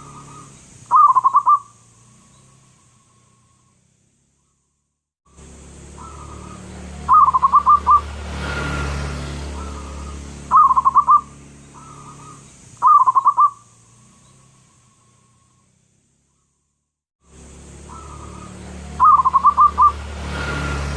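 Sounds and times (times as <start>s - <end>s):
dove cooing: 0.0s - 1.7s, 6.0s - 8.1s, 9.5s - 13.6s, 17.9s - 20.0s.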